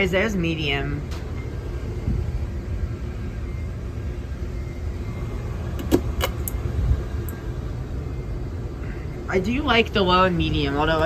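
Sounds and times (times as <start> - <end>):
ceiling fan running: 0.0 - 11.0.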